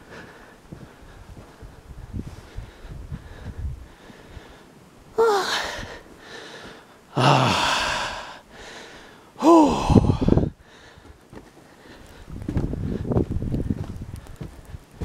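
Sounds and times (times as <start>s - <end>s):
person gasping or sighing: 5.2s - 11.0s.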